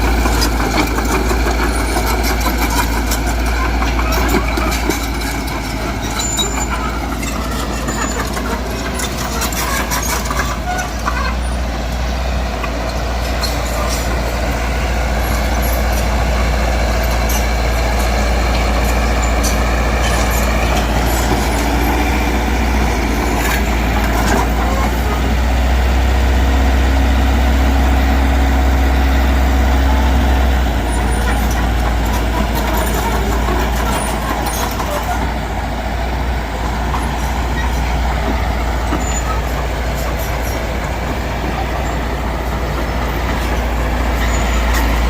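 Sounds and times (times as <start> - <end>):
diesel engine droning: 0.0 - 45.0.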